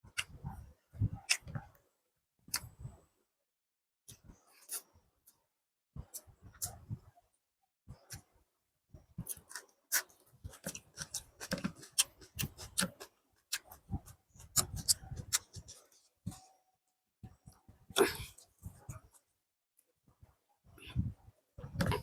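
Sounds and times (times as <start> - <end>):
close-miked chewing: 9.2 - 16.5.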